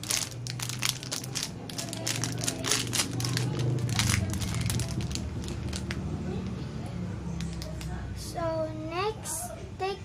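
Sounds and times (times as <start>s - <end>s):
plastic packaging crinkling: 0.0s - 6.1s.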